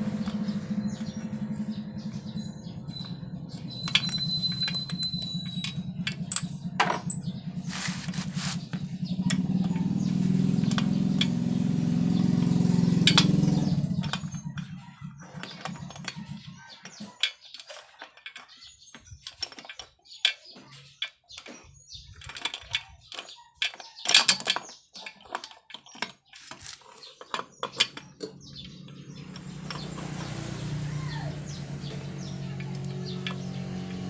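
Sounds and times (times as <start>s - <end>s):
low motor hum: 0.0s - 16.7s, 27.9s - 34.0s
tools and metal parts clicking: 1.3s - 10.0s, 13.0s - 30.3s, 31.6s - 34.0s.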